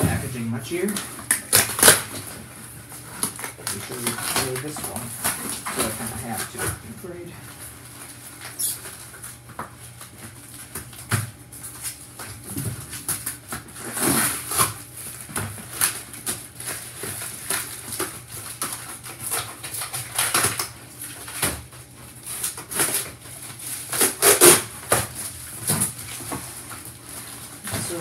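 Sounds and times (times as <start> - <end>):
packaging rustling and crinkling: 0.0 - 28.0.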